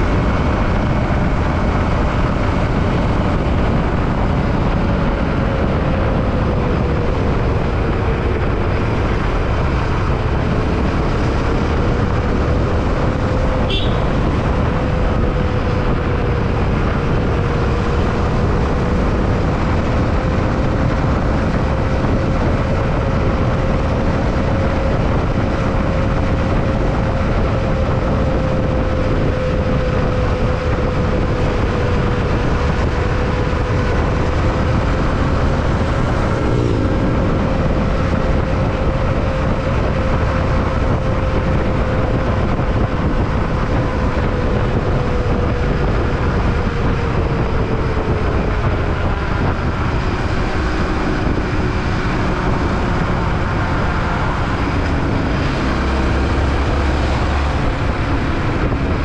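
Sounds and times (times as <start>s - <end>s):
motorcycle engine cruising: 0.0s - 59.0s
wind and road noise: 0.0s - 59.0s.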